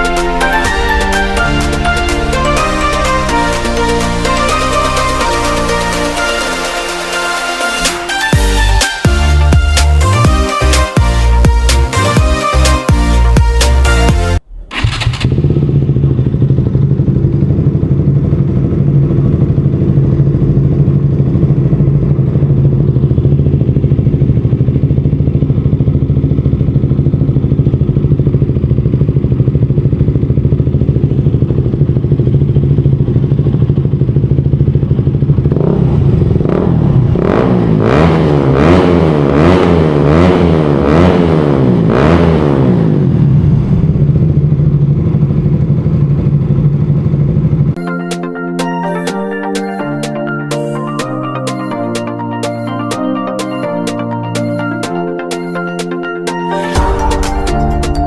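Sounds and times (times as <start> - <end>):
motorcycle engine revving: 11.3 - 47.8
motorcycle engine idling: 14.4 - 37.9, 43.1 - 47.8.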